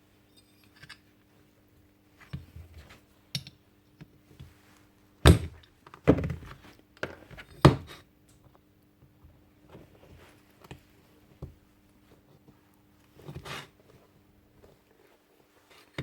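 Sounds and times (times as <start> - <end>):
loud thuds on workbench: 5.3 - 6.3.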